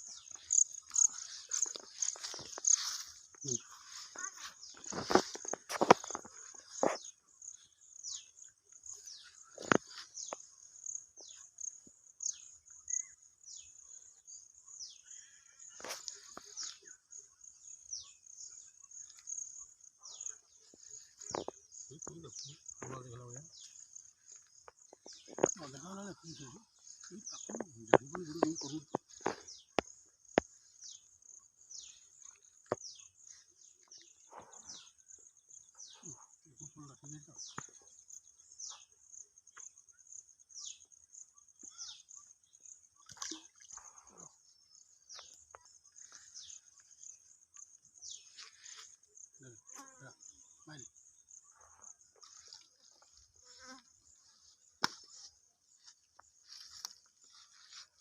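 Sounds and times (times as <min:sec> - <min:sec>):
birds chirping: 0:00.0 - 0:58.0.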